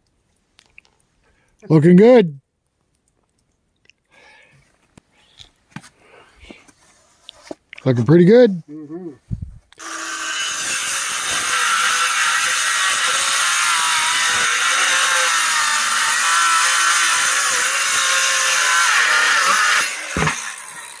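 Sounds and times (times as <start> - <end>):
power saw cutting wood: 9.8 - 21.0.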